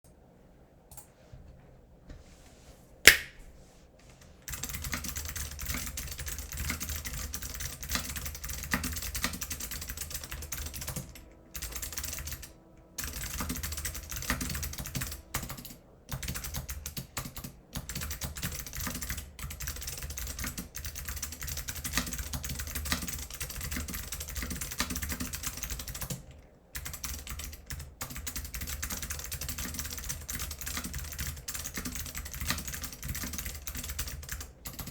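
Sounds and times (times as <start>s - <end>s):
single sharp click: 3.1s - 3.4s
mechanical keyboard typing: 4.5s - 26.2s, 26.8s - 34.9s.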